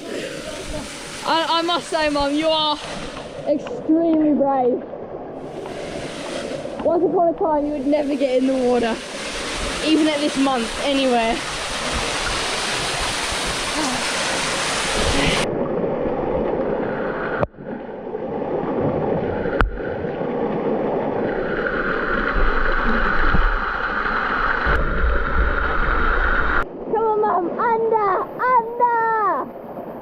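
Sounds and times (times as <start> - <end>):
waterfall rushing: 7.6 - 15.5
low rumble: 18.5 - 26.8.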